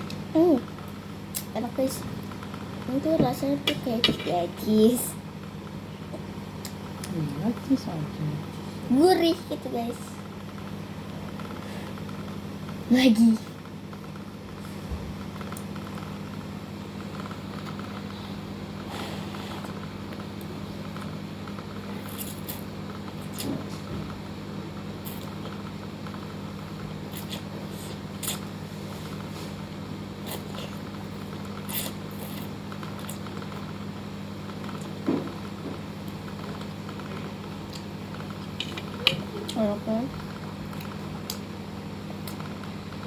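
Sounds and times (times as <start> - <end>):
steady low hum: 0.0 - 43.0
eating mouth sounds: 27.1 - 28.5, 31.5 - 33.4.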